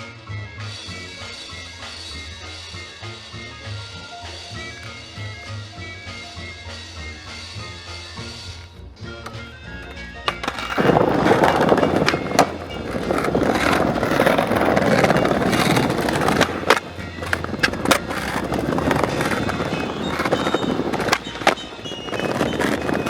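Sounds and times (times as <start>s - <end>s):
background music: 0.0s - 23.0s
skateboard rolling: 0.6s - 23.0s
skateboard knocks: 9.2s - 23.0s.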